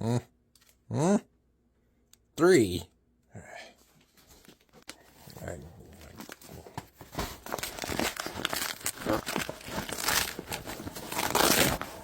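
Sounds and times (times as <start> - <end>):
packaging crinkling and rustling: 4.8 - 12.0.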